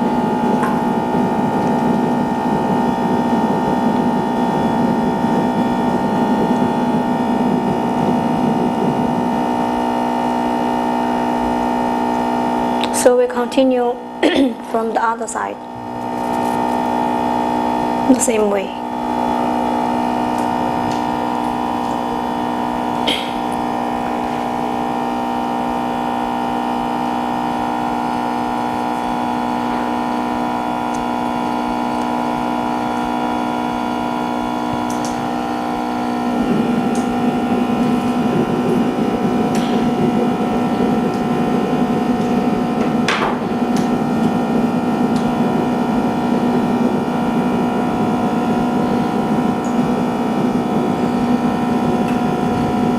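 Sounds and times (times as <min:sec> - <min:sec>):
steady machine hum: 0:00.0 - 0:52.9.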